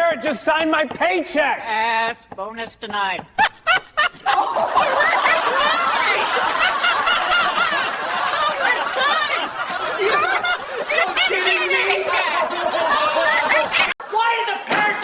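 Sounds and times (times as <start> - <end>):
crowd laughing: 2.7 - 14.2.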